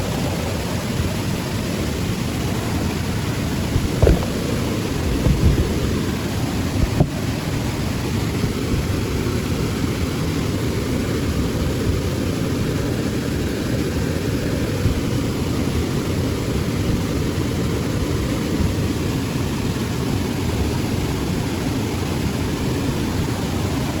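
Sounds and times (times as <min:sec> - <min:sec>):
low rumbling rush: 0:02.6 - 0:07.6.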